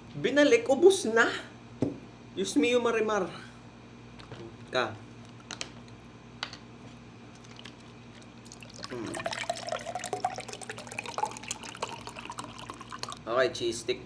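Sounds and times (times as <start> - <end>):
wet chewing sounds: 7.3 - 9.2.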